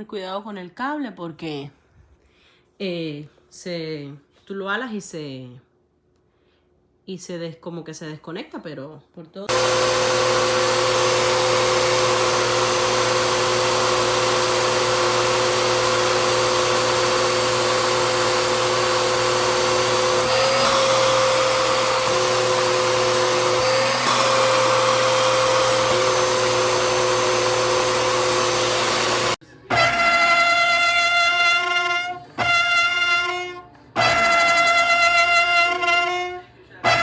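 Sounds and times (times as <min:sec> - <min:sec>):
vacuum cleaner running: 0:09.5 - 0:37.0.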